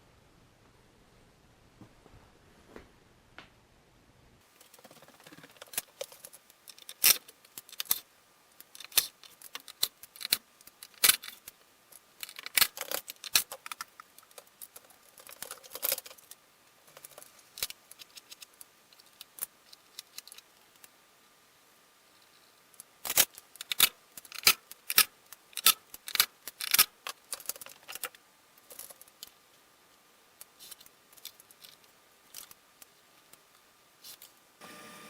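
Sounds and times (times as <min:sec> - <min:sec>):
small hard objects clicking: 0:04.6 - 0:20.9, 0:22.7 - 0:29.4.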